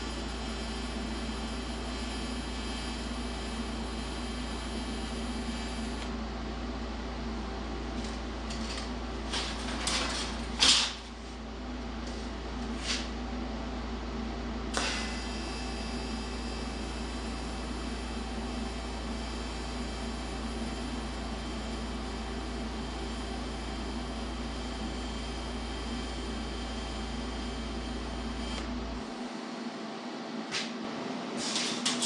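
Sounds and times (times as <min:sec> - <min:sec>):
air compressor running: 0:00.0 - 0:06.2, 0:14.6 - 0:29.6.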